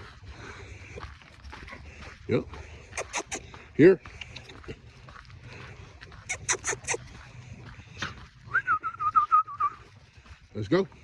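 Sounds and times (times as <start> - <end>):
heavy panting: 0.0 - 8.2.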